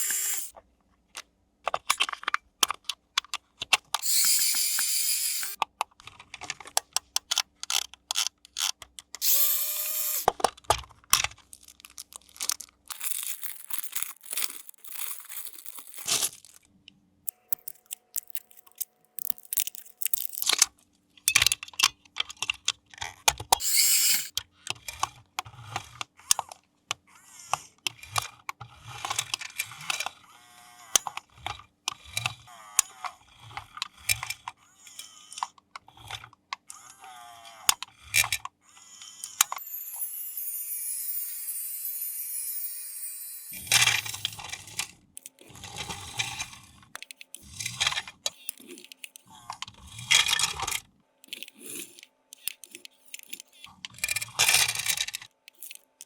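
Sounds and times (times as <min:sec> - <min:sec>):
plastic clicks and rattles: 0:01.1 - 0:04.9, 0:05.5 - 0:09.2, 0:10.2 - 0:16.7, 0:17.3 - 0:23.6, 0:43.6 - 0:56.0
steady tone: 0:39.6 - 0:44.2
rising whir: 0:39.6 - 0:44.3.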